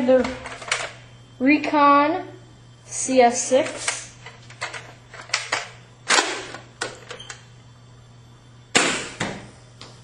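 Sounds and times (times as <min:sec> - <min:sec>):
foam dart blaster firing: 0:08.7 - 0:09.3.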